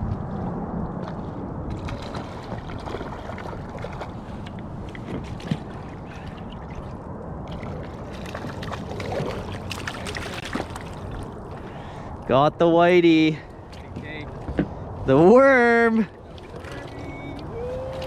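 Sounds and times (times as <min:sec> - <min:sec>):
river water sloshing and gurgling: 0:00.0 - 0:12.2, 0:13.5 - 0:15.0, 0:16.0 - 0:18.0
small water splashes: 0:01.7 - 0:12.1, 0:16.1 - 0:18.0.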